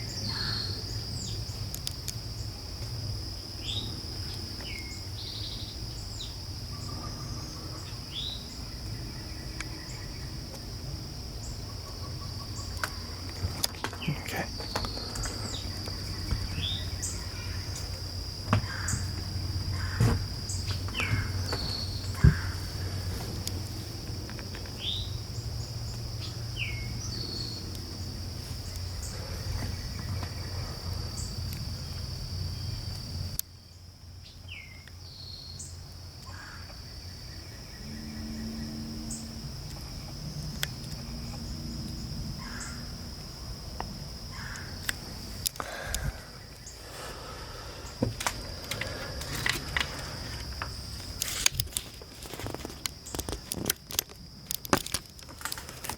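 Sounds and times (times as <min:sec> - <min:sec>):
insects droning: 0:00.0 - 0:55.9
bird chirping: 0:03.5 - 0:10.5, 0:11.4 - 0:19.2, 0:19.8 - 0:23.0, 0:24.8 - 0:27.7
sharp knocks: 0:19.9 - 0:20.3.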